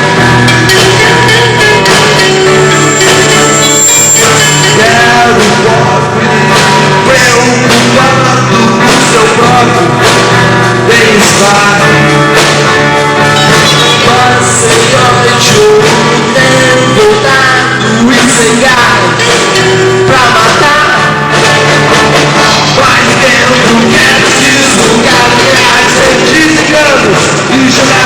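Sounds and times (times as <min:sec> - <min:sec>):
live rock band playing: 0:00.0 - 0:28.0
person singing: 0:00.0 - 0:28.0.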